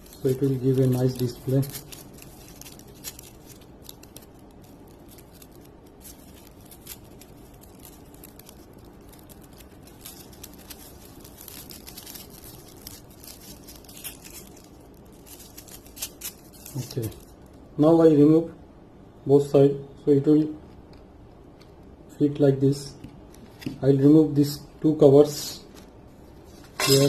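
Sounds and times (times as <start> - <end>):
film peeling crackle: 0.0 - 17.6
steady background hiss: 0.0 - 27.0.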